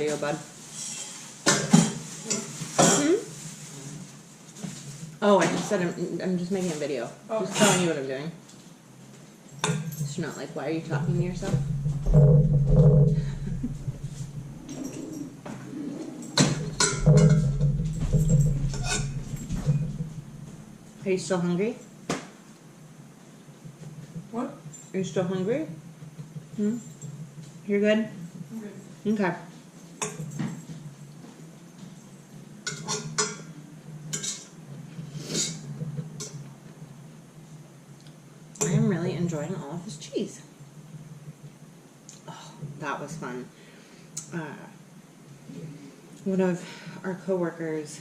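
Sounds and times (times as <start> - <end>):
dog whining softly: 14.6 - 16.8
cutlery clinking on plate: 16.2 - 20.0.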